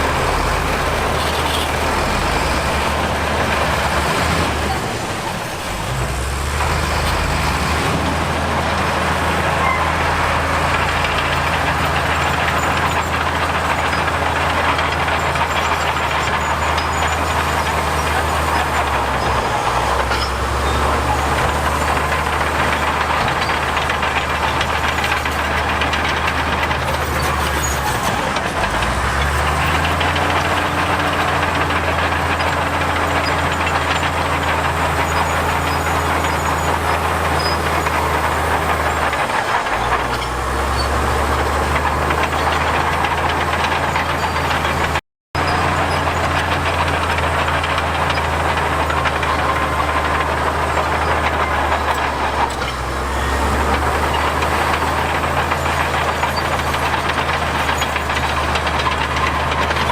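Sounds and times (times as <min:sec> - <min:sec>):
diesel engine of heavy machinery: 0:00.0 - 0:59.9.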